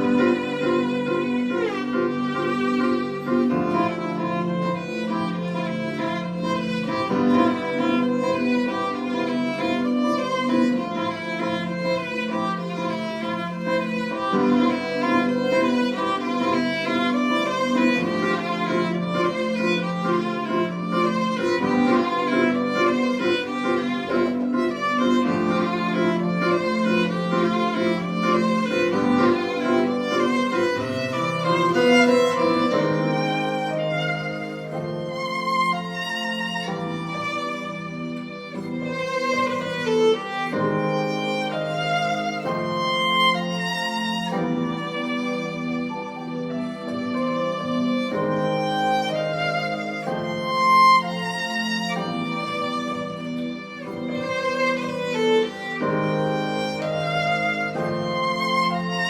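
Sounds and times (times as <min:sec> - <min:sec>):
violin melody: 0:00.0 - 0:59.0.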